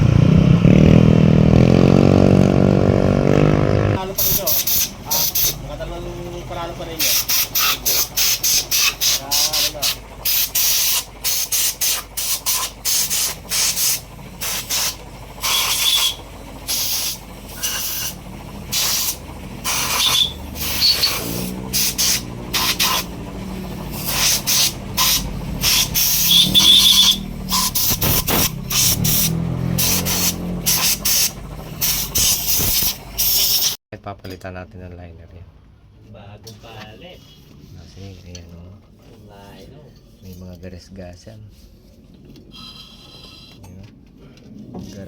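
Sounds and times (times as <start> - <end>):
hand scraping on engine metal: 41.5 - 43.6.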